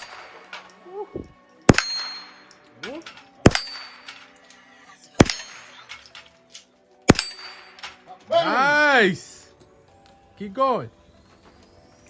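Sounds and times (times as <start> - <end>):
rifle shots: 0.0 - 0.7, 1.7 - 2.5, 3.4 - 4.2, 5.2 - 5.8, 7.1 - 8.0.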